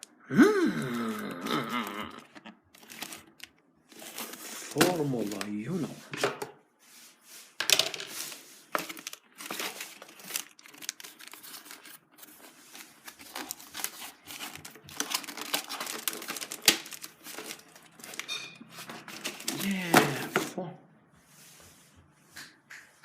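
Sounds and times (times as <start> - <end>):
packaging crinkling and tearing: 0.7 - 5.8, 8.2 - 20.6.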